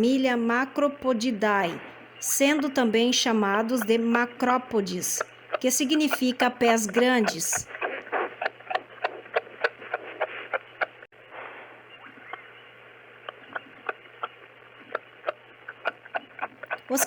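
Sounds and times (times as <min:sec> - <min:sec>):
steady hiss: 0:09.3 - 0:15.8.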